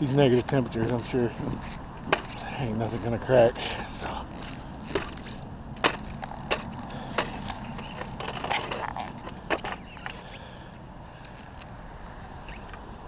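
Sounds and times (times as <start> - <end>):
ice cracking: 4.4 - 10.0.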